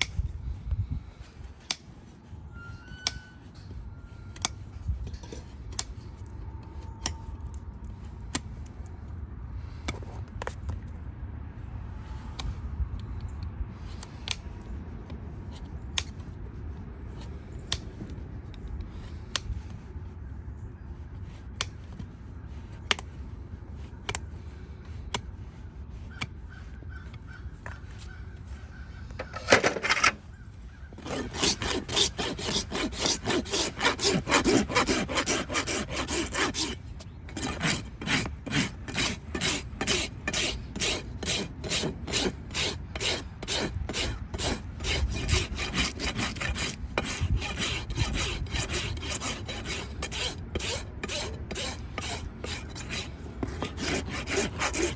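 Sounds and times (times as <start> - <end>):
rasp filing a hoof: 1.6 - 7.5, 23.8 - 54.9.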